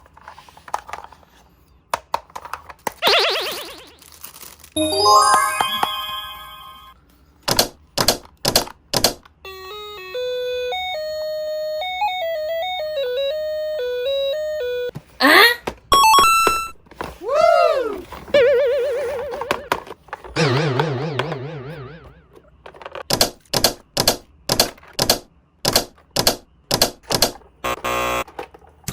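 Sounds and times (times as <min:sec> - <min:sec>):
chime: 0:04.8 - 0:07.0
short electronic melody: 0:04.8 - 0:07.0.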